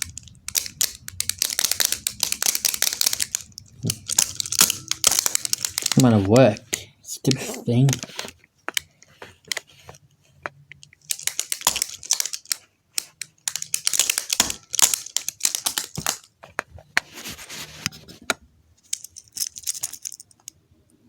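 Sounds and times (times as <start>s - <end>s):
rapid handling clicks: 0.0s - 9.7s, 10.7s - 16.7s
crinkling rustles: 0.0s - 20.4s.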